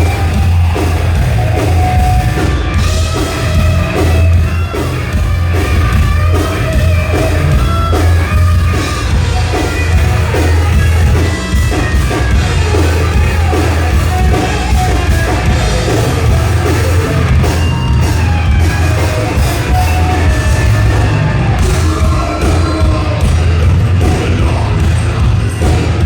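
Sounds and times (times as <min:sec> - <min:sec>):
metal band playing live: 0:00.0 - 0:26.0.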